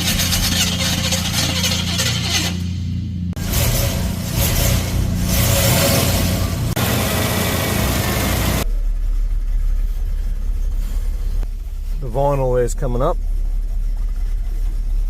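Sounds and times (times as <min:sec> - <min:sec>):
car engine revving then idling: 0:02.9 - 0:12.1.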